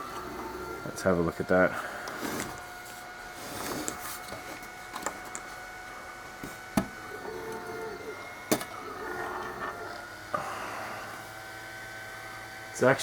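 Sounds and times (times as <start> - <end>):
faint steady whine: 0.0 - 13.0
clicks and knocks from handling parts: 3.8 - 5.5.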